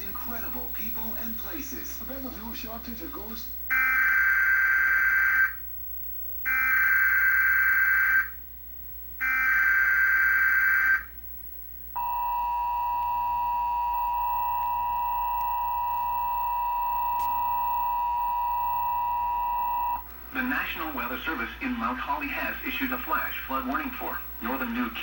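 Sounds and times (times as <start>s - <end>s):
buzzy digital data bursts: 0.0s - 25.0s
two-tone attention signal: 12.0s - 20.1s.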